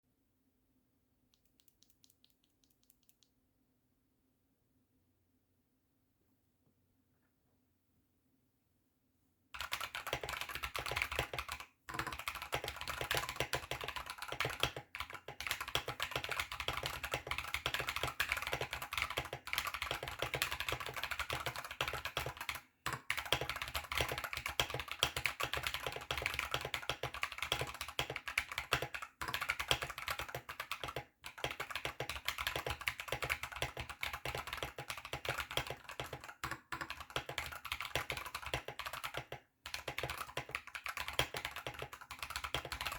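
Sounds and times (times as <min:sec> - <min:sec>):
mechanical keyboard typing: 0:09.6 - 0:42.9.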